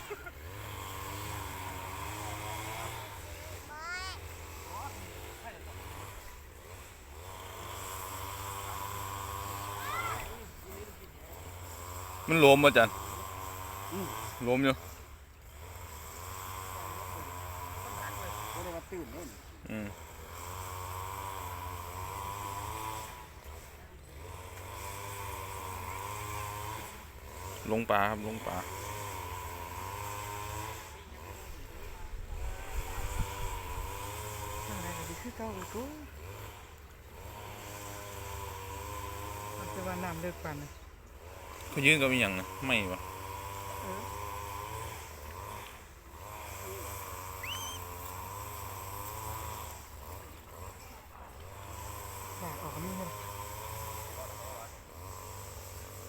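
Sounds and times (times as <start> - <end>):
boat engine running: 0.0 - 56.0
short rising chirp: 47.4 - 47.9.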